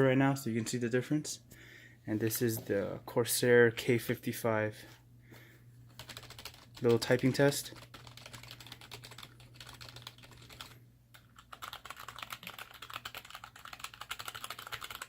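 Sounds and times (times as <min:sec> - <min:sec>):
fast typing on keyboard: 0:06.0 - 0:15.0.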